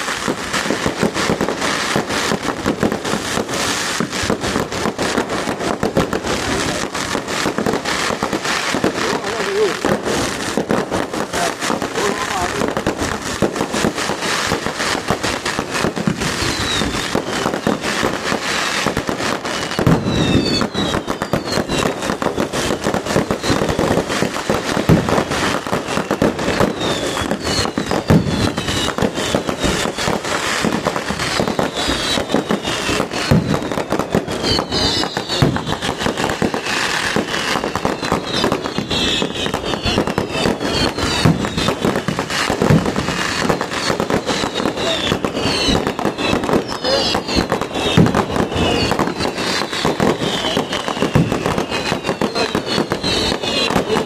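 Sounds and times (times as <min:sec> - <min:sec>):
firecrackers crackling: 0:00.0 - 0:54.0
firework bangs: 0:00.0 - 0:54.0
falling whistle tones: 0:16.4 - 0:17.7, 0:19.9 - 0:21.9, 0:34.3 - 0:35.7, 0:43.8 - 0:53.7.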